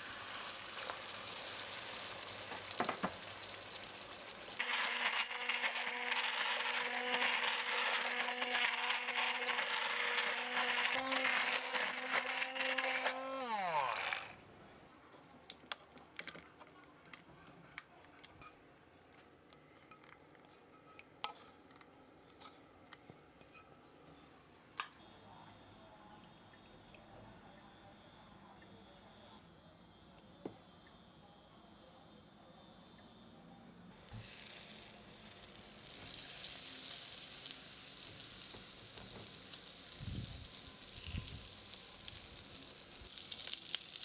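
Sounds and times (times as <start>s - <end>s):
blender motor whirring: 0.0s - 14.4s, 34.1s - 43.9s.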